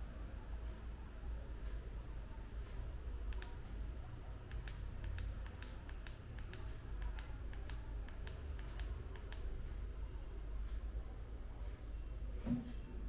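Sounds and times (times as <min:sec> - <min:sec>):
sharp light clicks: 0:03.3 - 0:03.6, 0:04.5 - 0:09.5.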